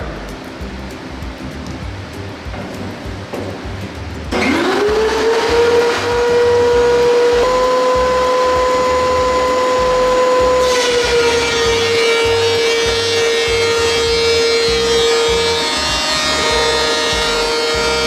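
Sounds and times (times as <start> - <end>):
planer cutting board: 4.3 - 18.0
thickness planer whining: 4.3 - 18.0.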